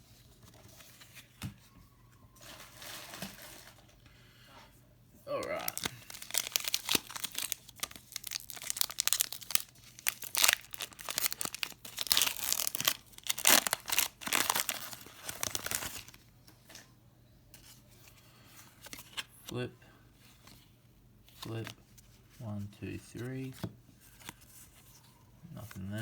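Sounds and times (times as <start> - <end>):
foil wrapper tearing and crinkling: 5.6 - 16.2.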